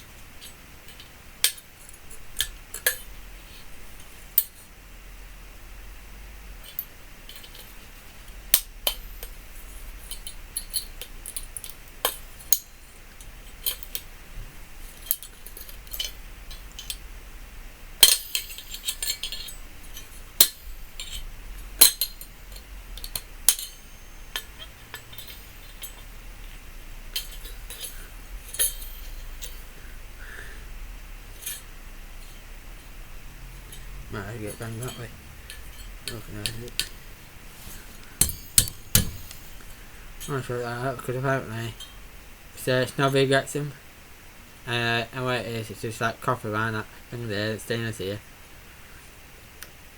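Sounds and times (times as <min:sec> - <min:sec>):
metal parts clinking: 0:00.4 - 0:03.2, 0:06.6 - 0:07.9, 0:08.5 - 0:12.8, 0:13.4 - 0:14.1, 0:14.9 - 0:17.0, 0:18.0 - 0:29.8, 0:31.3 - 0:40.5.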